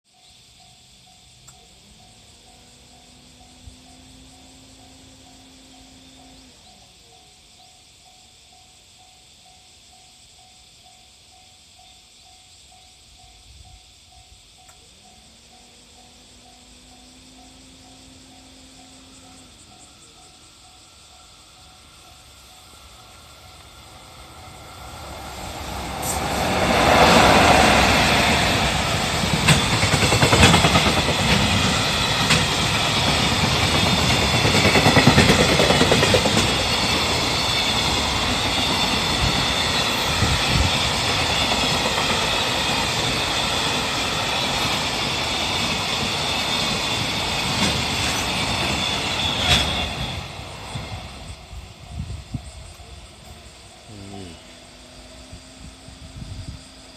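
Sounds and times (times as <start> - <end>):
electric locomotive passing: 0.1 - 56.9
train wheels clacking over rail joints: 25.0 - 51.3.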